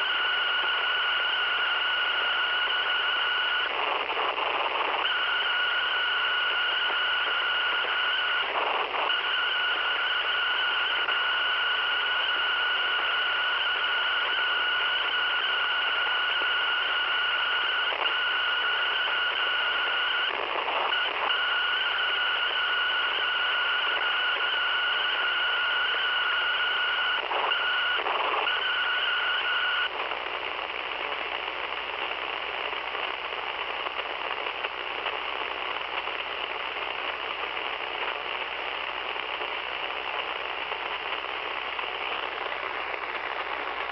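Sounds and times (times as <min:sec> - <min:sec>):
radio static hiss: 0:00.0 - 0:43.9
radio high whistle: 0:05.0 - 0:29.9.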